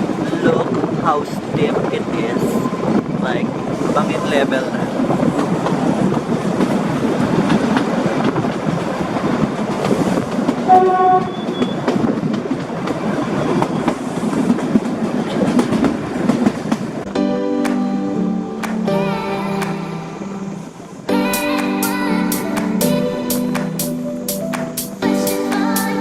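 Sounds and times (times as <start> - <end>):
train carriage rattling on track: 0.0 - 17.2
train wheel clicks: 5.1 - 17.1
train horn blast: 10.7 - 11.8.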